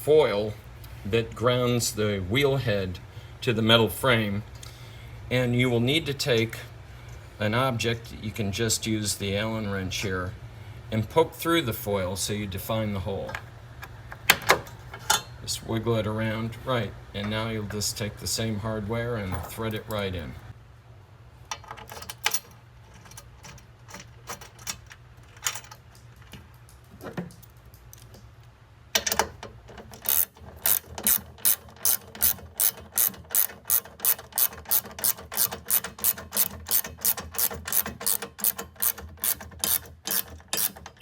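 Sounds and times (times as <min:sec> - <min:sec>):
bolt being threaded by hand: 0:29.0 - 0:41.0
ratchet wrench clicking: 0:29.0 - 0:41.0.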